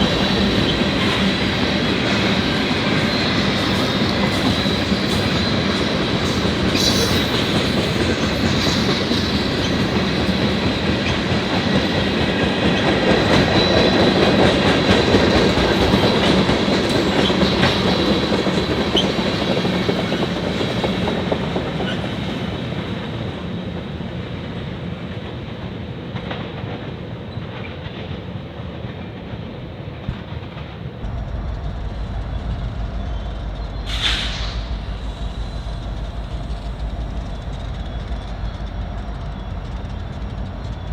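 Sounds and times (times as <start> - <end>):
high wheel squeal: 0.0 - 10.3, 31.0 - 40.9
clickety-clack of train wheels: 0.0 - 40.9
low rumble: 31.0 - 40.9.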